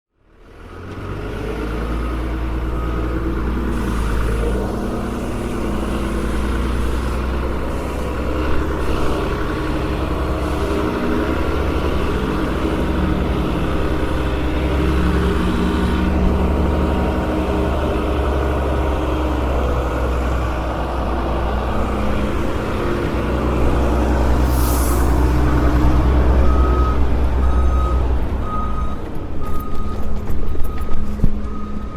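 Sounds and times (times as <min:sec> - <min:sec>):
tow truck engine running: 0:00.2 - 0:31.9
brief hiss: 0:24.3 - 0:25.9.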